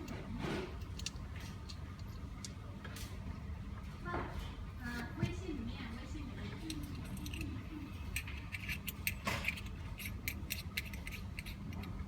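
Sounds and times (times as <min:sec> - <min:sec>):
small hard parts clicking: 0:00.8 - 0:02.6, 0:06.6 - 0:12.0.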